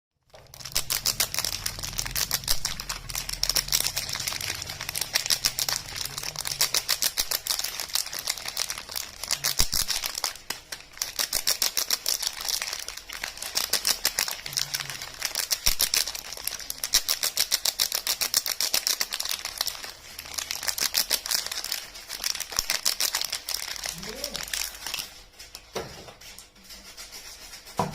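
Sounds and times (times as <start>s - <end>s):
packaging crinkling: 0.2s - 26.5s.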